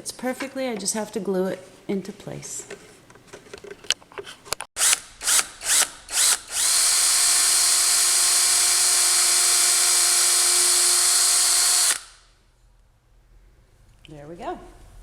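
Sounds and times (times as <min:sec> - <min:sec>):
power drill drilling wood: 0:04.8 - 0:12.2.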